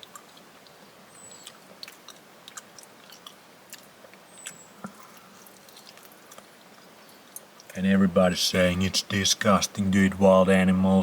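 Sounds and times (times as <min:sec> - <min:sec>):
chewing raw meat: 0:00.0 - 0:07.8.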